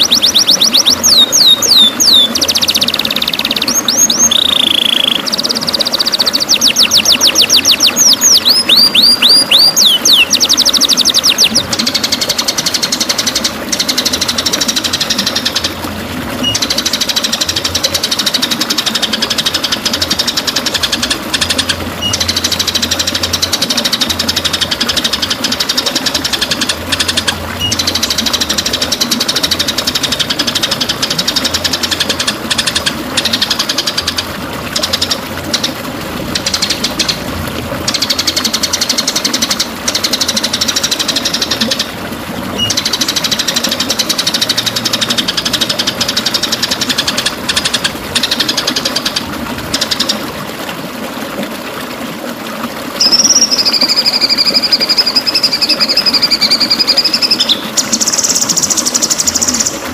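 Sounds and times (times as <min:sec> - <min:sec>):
bird singing whistles and trills: 0:00.0 - 0:11.7, 0:16.4 - 0:16.7, 0:22.0 - 0:23.2, 0:27.0 - 0:28.1, 0:42.6 - 0:43.5, 0:53.0 - 0:59.8.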